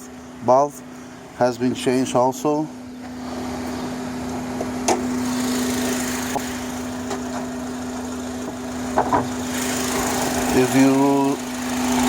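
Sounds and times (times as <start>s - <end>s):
car engine idling: 2.8s - 12.0s.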